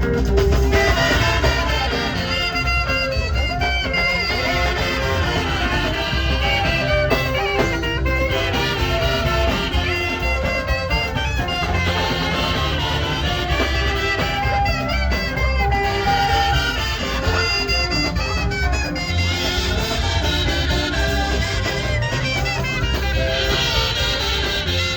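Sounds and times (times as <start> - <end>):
backing track with bass beat: 0.0 - 24.9
saxophone melody: 0.0 - 24.9.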